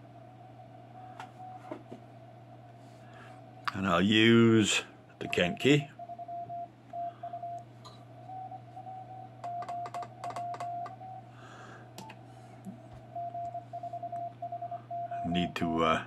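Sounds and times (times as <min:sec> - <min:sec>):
low hum: 0:00.0 - 0:15.3
morse code tone: 0:05.2 - 0:07.6, 0:08.3 - 0:11.3, 0:13.1 - 0:15.6.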